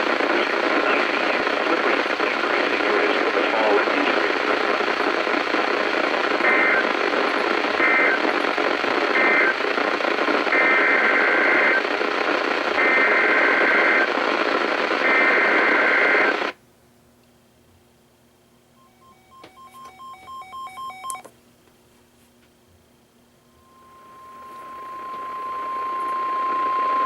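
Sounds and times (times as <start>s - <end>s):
radio static: 0.0s - 16.6s, 23.6s - 27.0s.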